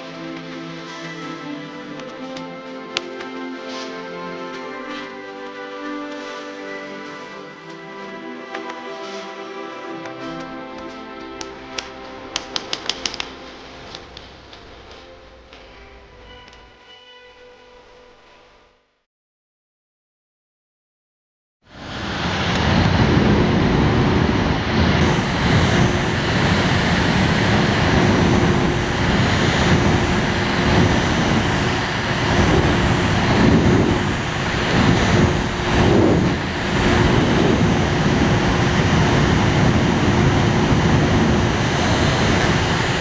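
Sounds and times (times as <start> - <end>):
electric fan running: 24.7 - 43.0.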